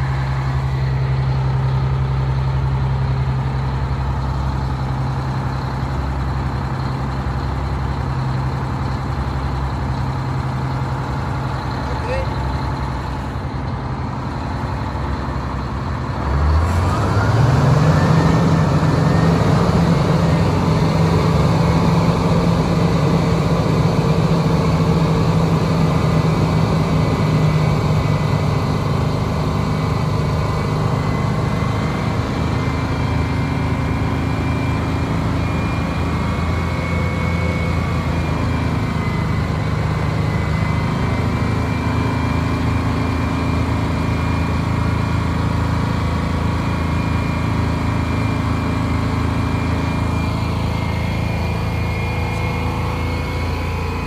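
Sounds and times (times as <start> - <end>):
bus diesel engine revving: 0.0 - 54.0.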